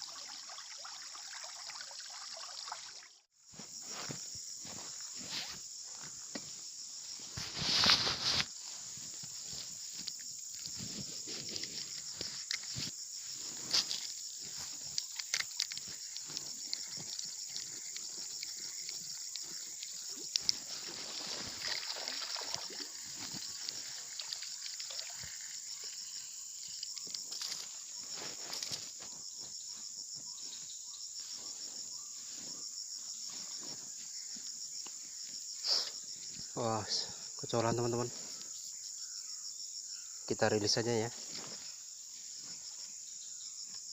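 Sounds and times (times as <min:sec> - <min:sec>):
crickets chirping: 0:00.0 - 0:43.9
handling clicks and rustles: 0:07.3 - 0:22.0.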